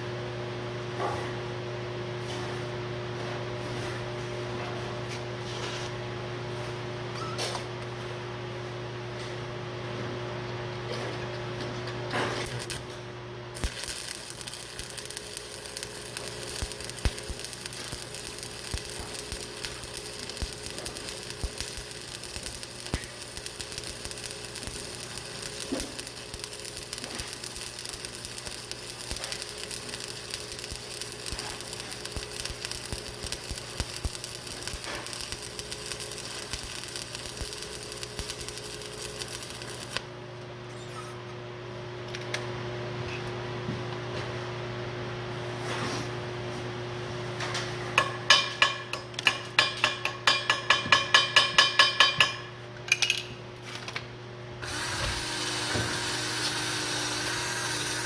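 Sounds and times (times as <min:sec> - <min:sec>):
arc welding crackling sizzle: 0:10.9 - 0:40.4, 0:54.6 - 0:58.0
steady low hum: 0:11.3 - 0:40.7.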